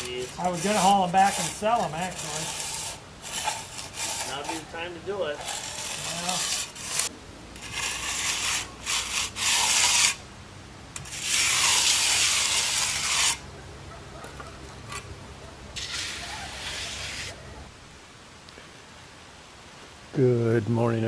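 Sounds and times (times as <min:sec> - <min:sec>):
hand tool scraping concrete: 0:00.0 - 0:10.2, 0:11.0 - 0:13.4, 0:15.8 - 0:17.4.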